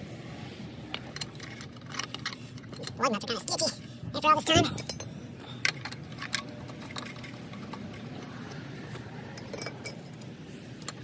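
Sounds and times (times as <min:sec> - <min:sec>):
low background hum: 0:00.0 - 0:11.0
metallic clinks of lug nuts and tools: 0:04.5 - 0:11.0.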